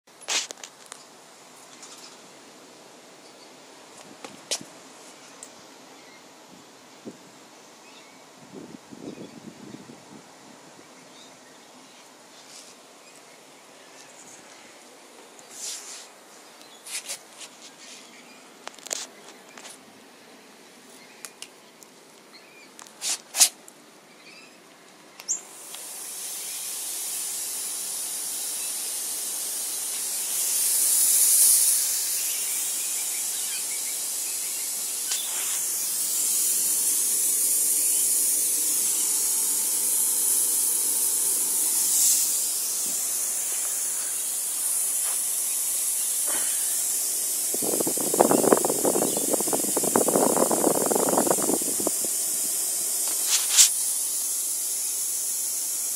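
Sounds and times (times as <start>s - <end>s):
air hissing from compressor: 22.9s - 23.6s, 25.2s - 55.9s.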